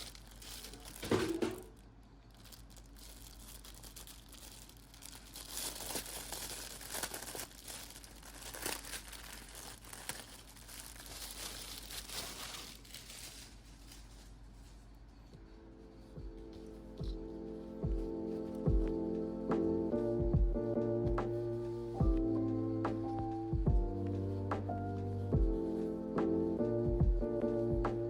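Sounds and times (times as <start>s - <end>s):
packaging crackling being unwrapped: 0.0s - 14.8s.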